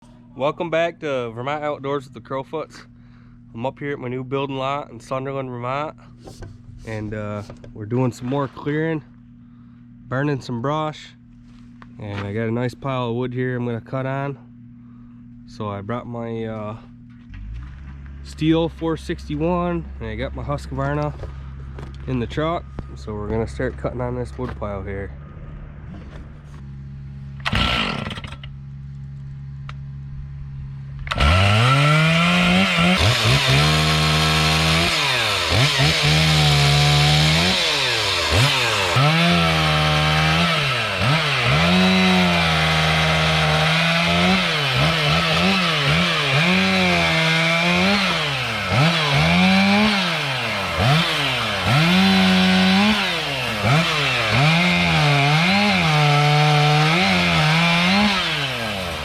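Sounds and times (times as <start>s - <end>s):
chainsaw cutting firewood: 27.3s - 29.0s, 31.0s - 59.0s.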